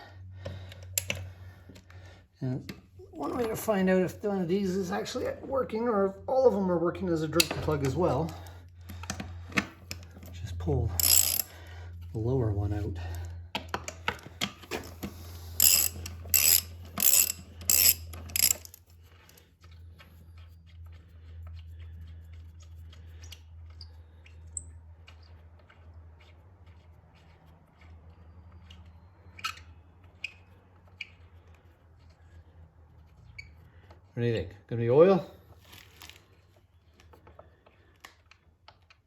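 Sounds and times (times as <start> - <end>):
steady low hum: 0.0 - 29.9
ratchet wrench clicking: 0.9 - 1.2, 11.0 - 11.6, 14.8 - 18.8.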